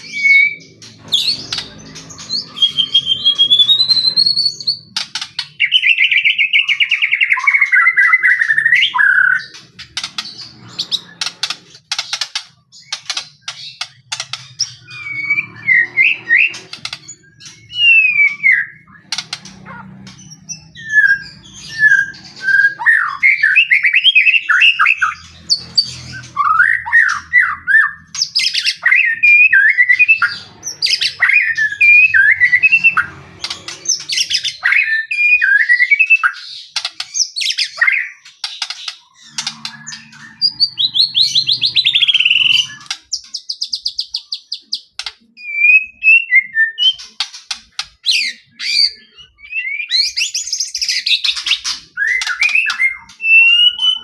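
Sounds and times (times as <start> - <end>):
bird singing whistled phrases: 0.0 - 0.7, 2.4 - 4.8, 17.6 - 19.0, 26.1 - 33.1, 34.2 - 36.5, 39.2 - 42.9, 45.4 - 47.1, 48.1 - 54.0.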